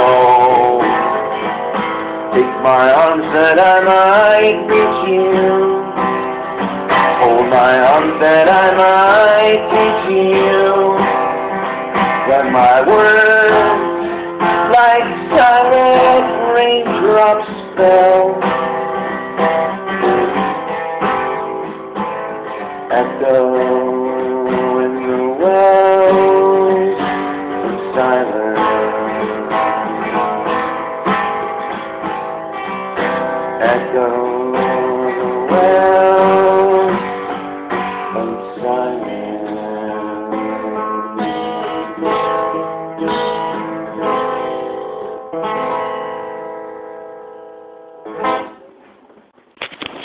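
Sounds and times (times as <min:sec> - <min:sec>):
person singing: 0:00.0 - 0:01.7, 0:02.3 - 0:06.4, 0:07.0 - 0:11.5, 0:12.2 - 0:18.6, 0:22.8 - 0:30.1, 0:33.4 - 0:37.4, 0:38.0 - 0:43.3
acoustic guitar strumming: 0:00.0 - 0:50.0.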